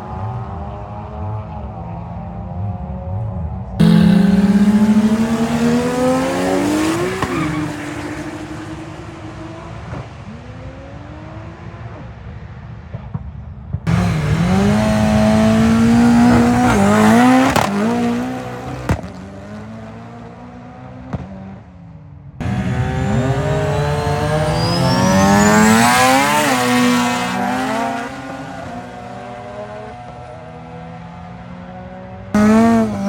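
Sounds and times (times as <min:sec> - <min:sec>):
high whine: 0:03.8 - 0:07.4
car engines revving through gears: 0:03.8 - 0:11.9, 0:13.9 - 0:21.5, 0:22.4 - 0:33.0.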